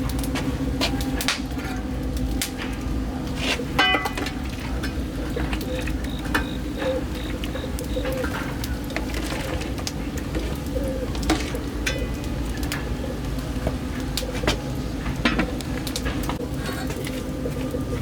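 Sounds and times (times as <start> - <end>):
steady low hum: 0.0 - 18.0
kitchen utensils clinking and scraping: 3.4 - 7.1, 8.2 - 12.9.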